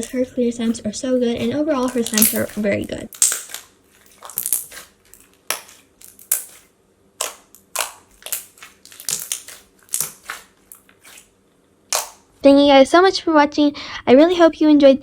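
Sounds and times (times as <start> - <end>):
slime clicking and popping: 1.7 - 6.6, 7.2 - 11.2, 11.9 - 12.2.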